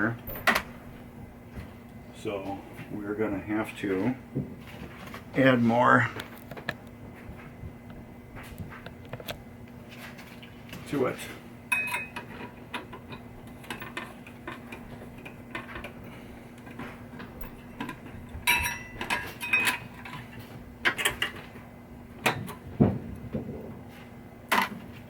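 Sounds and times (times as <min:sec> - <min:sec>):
steady low hum: 0:00.0 - 0:25.0
tools and metal parts clinking: 0:11.7 - 0:16.0, 0:16.6 - 0:21.5.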